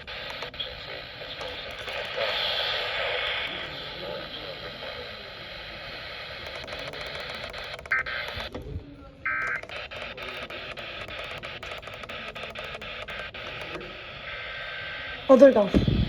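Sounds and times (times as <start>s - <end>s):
radio static hiss: 0.0s - 16.0s
alert data tones: 9.3s - 10.4s.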